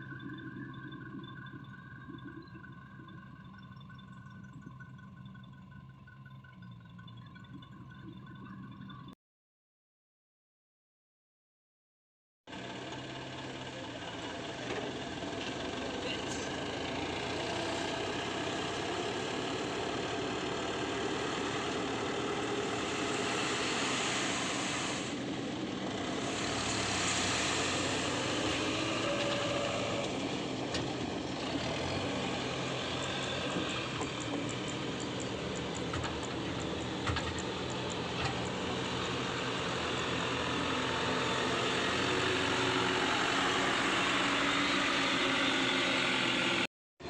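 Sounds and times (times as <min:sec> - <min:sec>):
heavy engine droning: 0:12.5 - 0:46.7.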